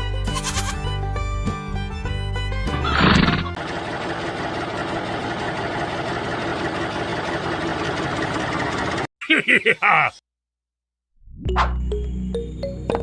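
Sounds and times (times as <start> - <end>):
miniature tractor engine running: 3.6 - 9.1.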